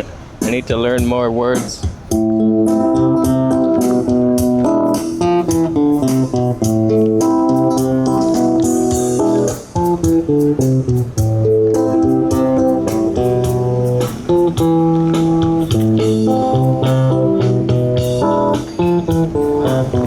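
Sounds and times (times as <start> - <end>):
guitar melody over bass line: 1.8 - 20.0.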